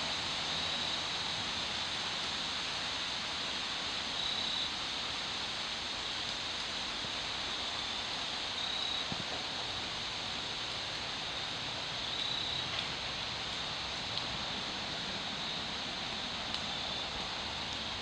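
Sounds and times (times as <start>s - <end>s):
outdoor background hiss: 0.0s - 18.0s.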